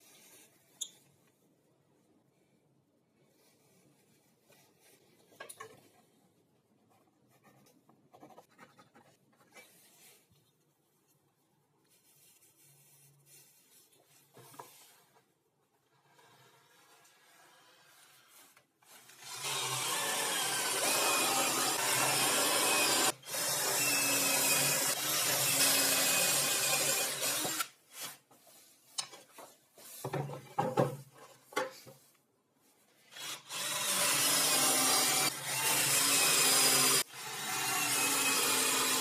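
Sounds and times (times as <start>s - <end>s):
power tool cutting wood: 19.2s - 27.7s, 33.2s - 39.0s
wood knocking and clattering: 30.0s - 32.0s.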